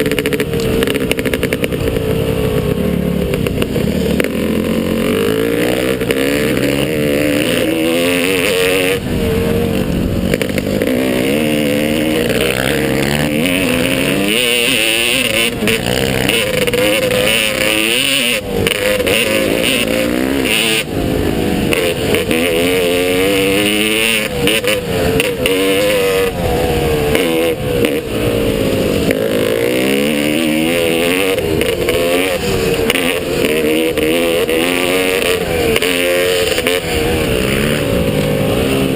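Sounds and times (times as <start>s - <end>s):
motocross bike engine revving: 0.0s - 38.9s.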